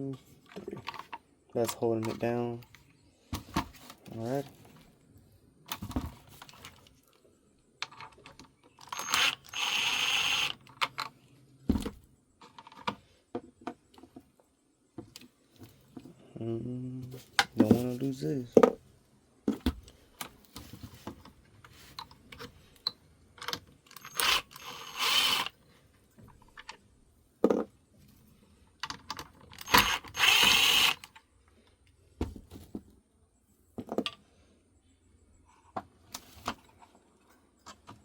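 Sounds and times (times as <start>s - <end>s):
plastic parts and tools clicking: 0.4s - 2.8s, 7.8s - 11.2s, 12.4s - 13.1s, 19.8s - 25.6s, 28.8s - 31.3s
cordless drill spinning: 8.8s - 10.7s, 23.9s - 25.6s, 29.6s - 31.2s.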